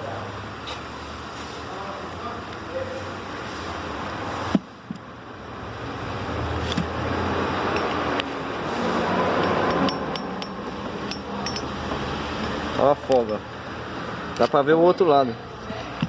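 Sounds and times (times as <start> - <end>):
steady background noise: 0.0 - 16.0
piston clinking in cylinder: 7.7 - 8.2, 9.3 - 13.7.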